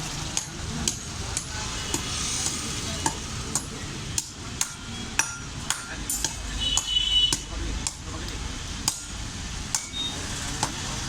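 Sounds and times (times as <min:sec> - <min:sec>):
steady noisy background: 0:00.0 - 0:11.0
hammer striking iron anvil: 0:03.0 - 0:08.0, 0:08.8 - 0:10.8.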